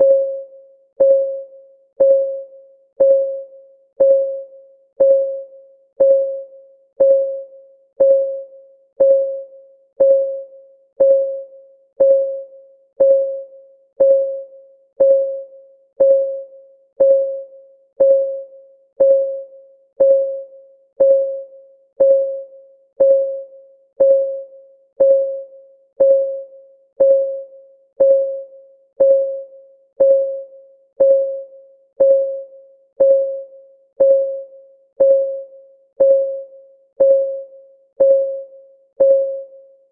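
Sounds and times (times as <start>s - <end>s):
bell-like timer ticks: 33.0s - 33.4s, 35.0s - 39.5s.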